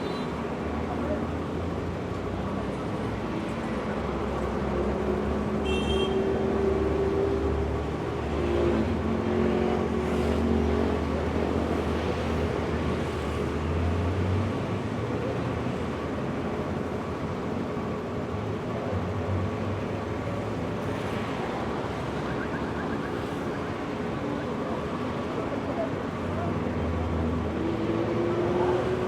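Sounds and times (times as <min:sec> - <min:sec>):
vehicle engines passing: 0:06.2 - 0:29.0.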